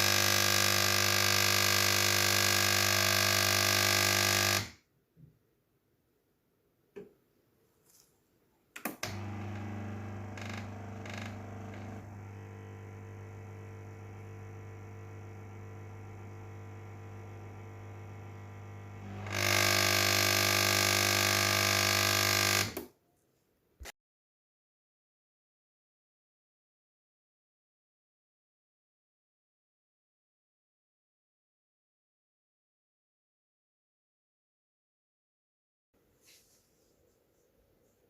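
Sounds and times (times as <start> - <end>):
espresso machine pump buzzing: 0.0 - 4.7, 9.0 - 22.8.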